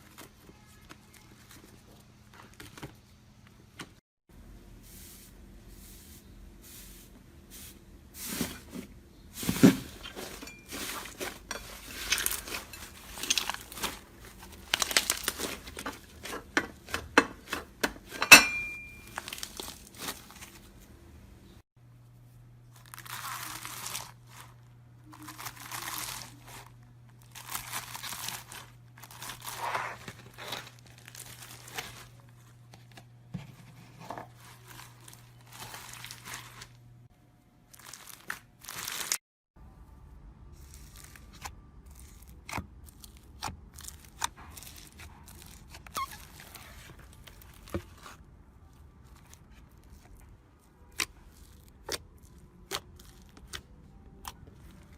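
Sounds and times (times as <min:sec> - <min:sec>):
crunchy material crackling: 0:09.4 - 0:16.9, 0:18.8 - 0:20.9, 0:22.6 - 0:32.6, 0:34.2 - 0:36.9, 0:37.7 - 0:39.2, 0:40.5 - 0:54.9.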